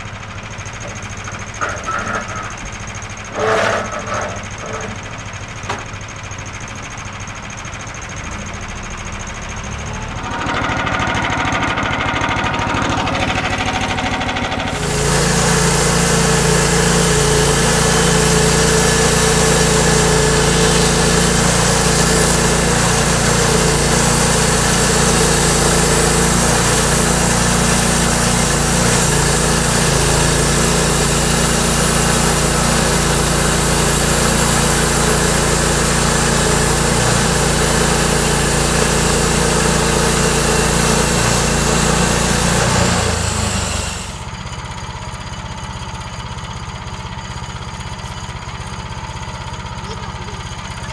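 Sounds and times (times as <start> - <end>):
sawmill engine running: 0.0 - 50.9
blade cutting log hiss: 14.6 - 44.3.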